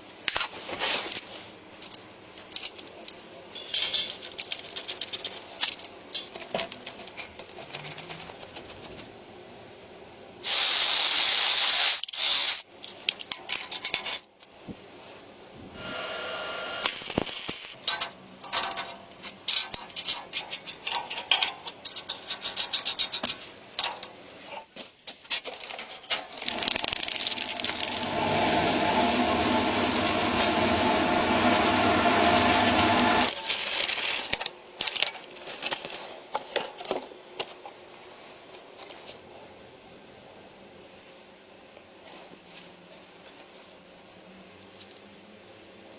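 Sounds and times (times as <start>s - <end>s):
metal parts clicking and knocking: 0.3s - 8.8s, 12.0s - 14.3s, 16.9s - 28.0s
small power tool running: 15.8s - 16.9s, 26.5s - 33.3s.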